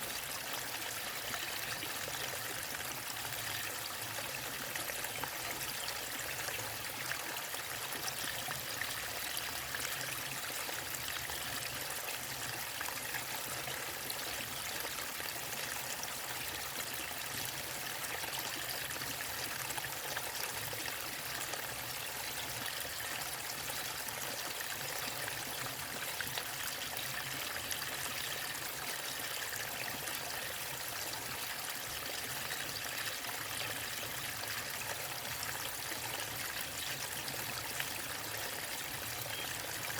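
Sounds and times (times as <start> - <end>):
water trickling: 16.8 - 39.9.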